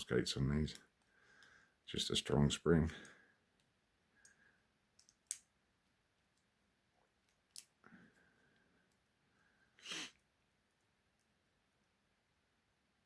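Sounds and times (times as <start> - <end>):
faint clicks of lock picking: 3.0 - 5.5.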